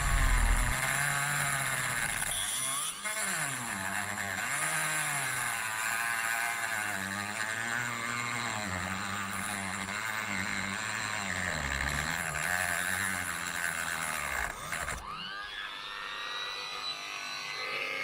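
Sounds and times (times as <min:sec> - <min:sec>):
grinding hiss: 0:00.0 - 0:00.9
rotary tool cutting metal: 0:00.0 - 0:18.0.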